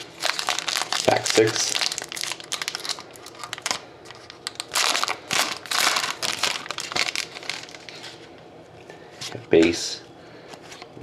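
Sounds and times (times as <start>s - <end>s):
wrapper tearing and crinkling: 0.0s - 8.2s.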